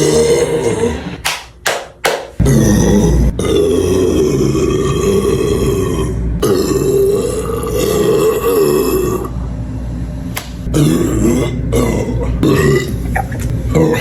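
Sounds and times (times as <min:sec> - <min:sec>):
woman belching: 0:02.4 - 0:09.3, 0:10.6 - 0:14.0.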